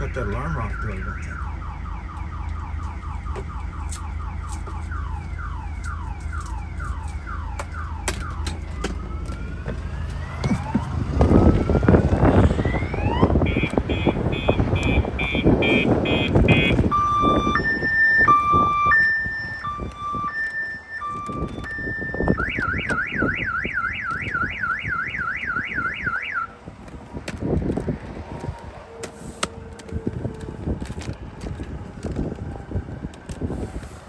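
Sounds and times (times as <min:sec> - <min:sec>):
car alarm siren: 0:00.0 - 0:27.4.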